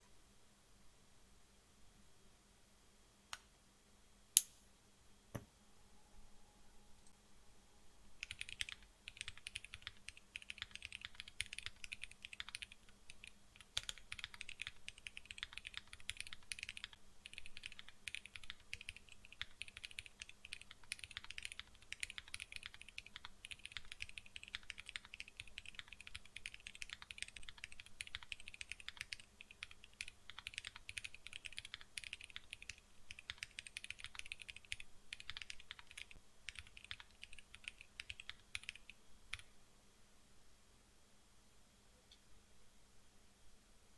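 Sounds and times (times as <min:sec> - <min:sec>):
mechanical keyboard typing: 0:08.2 - 0:39.5.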